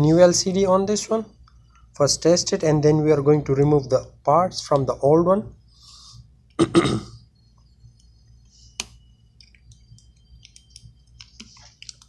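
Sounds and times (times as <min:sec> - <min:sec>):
phone parts clicking and ticking: 0:08.8 - 0:12.0.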